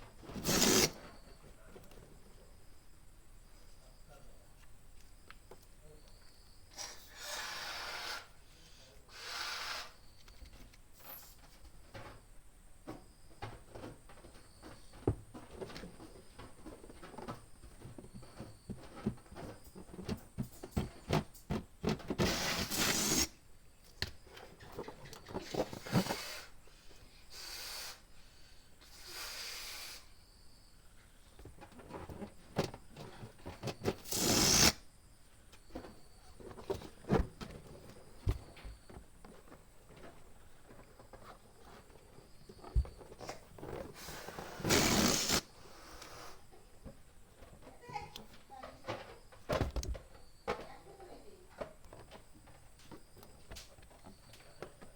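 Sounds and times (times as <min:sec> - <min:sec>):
balloon pump hissing: 0:00.4 - 0:01.0, 0:06.8 - 0:08.4, 0:09.1 - 0:10.0, 0:22.2 - 0:23.4, 0:27.3 - 0:28.0, 0:28.9 - 0:30.1, 0:33.9 - 0:34.8, 0:44.0 - 0:46.4
balloon rubber crackling: 0:22.2 - 0:23.3, 0:34.0 - 0:34.8, 0:44.2 - 0:45.5.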